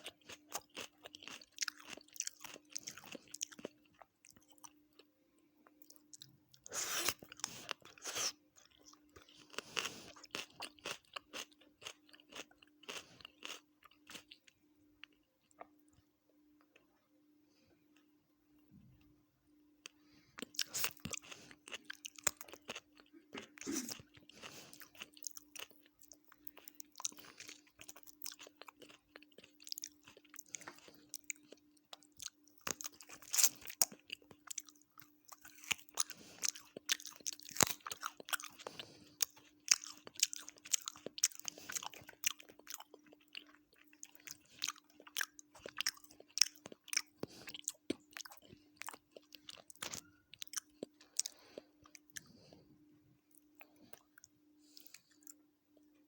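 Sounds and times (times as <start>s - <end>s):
chewing and crunching food: 0.0s - 17.0s, 19.8s - 56.0s
faint hum: 2.2s - 56.0s.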